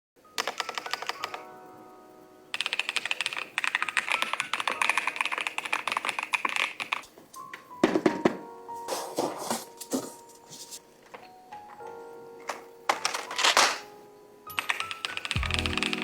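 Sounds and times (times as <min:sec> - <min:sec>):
keyboard keys clacking: 0:00.3 - 0:16.0.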